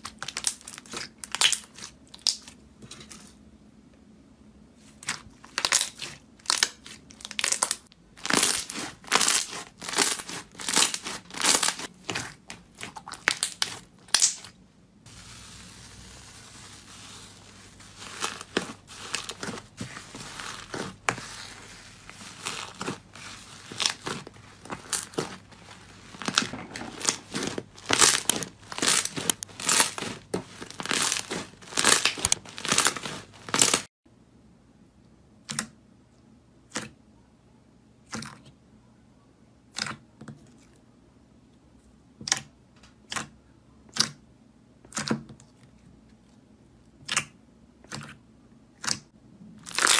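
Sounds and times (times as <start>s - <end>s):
slime squishing by hand: 0.0s - 3.4s, 4.8s - 33.9s, 48.8s - 49.9s.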